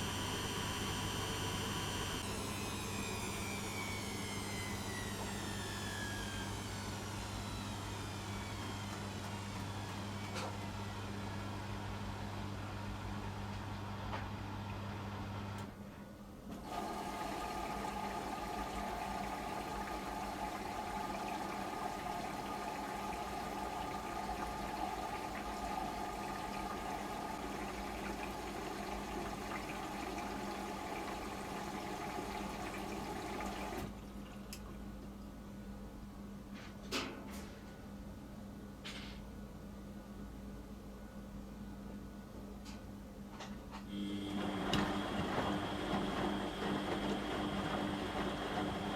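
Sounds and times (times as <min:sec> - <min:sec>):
high whistle of inlet valve: 0:00.0 - 0:09.1
water rushing into machine: 0:00.0 - 0:10.5, 0:16.5 - 0:34.9, 0:43.9 - 0:48.9
washing machine hum: 0:00.0 - 0:37.9, 0:42.1 - 0:48.9.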